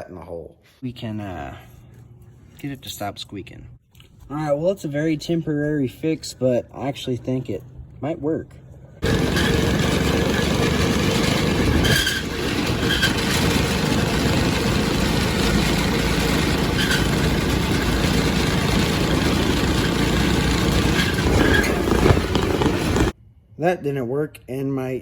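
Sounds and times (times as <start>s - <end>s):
high squeaks of rubbing part: 9.0s - 23.1s
go-kart engine running: 9.0s - 23.2s.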